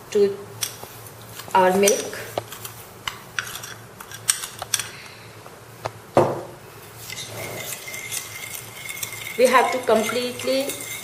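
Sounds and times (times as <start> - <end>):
metal spoon clinking against bowl: 7.1 - 11.0.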